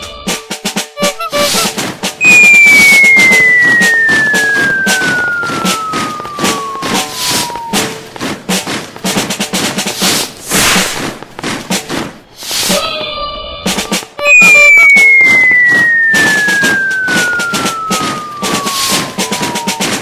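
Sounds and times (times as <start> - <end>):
whistle sliding down in pitch: 1.1 - 8.0, 14.2 - 20.0
clatter of drum-like hits: 5.0 - 12.3.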